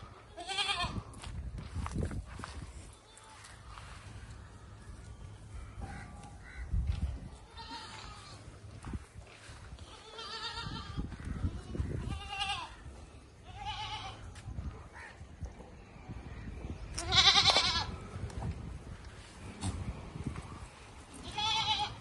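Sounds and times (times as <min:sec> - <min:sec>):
goats bleating: 0:00.3 - 0:01.0, 0:07.4 - 0:08.5, 0:09.7 - 0:14.3, 0:17.0 - 0:18.0, 0:21.2 - 0:22.0.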